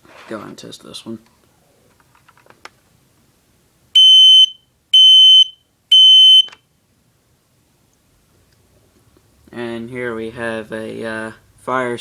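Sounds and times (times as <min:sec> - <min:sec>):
smoke alarm beeps: 0:04.0 - 0:06.6
smoke alarm click: 0:04.0 - 0:06.6.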